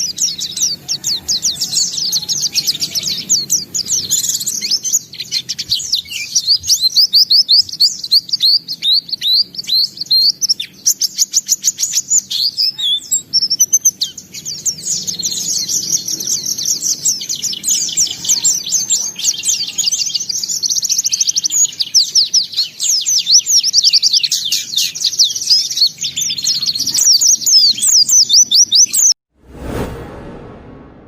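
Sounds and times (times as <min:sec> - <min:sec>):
bird twittering song: 0:00.0 - 0:29.2
burst of noise: 0:29.4 - 0:31.0.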